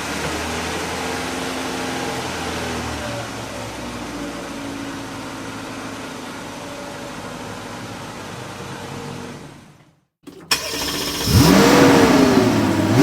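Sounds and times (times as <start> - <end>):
car engine idling: 10.3 - 13.0.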